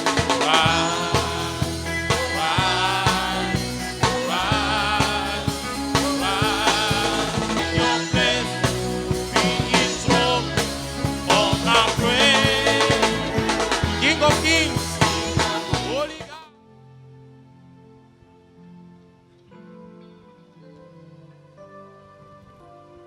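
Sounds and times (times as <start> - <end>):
backing band and drums: 0.0 - 16.4
person singing with vibrato: 0.0 - 16.5.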